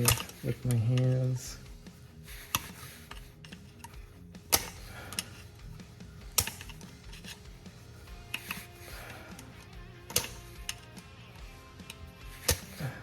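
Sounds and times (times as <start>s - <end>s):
hand tools clicking on metal: 0.0s - 1.7s, 2.4s - 13.0s
quiet background music: 0.0s - 13.0s.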